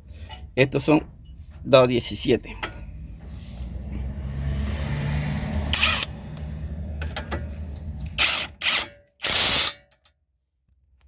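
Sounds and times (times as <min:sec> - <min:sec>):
power wrench running: 0:05.5 - 0:09.8.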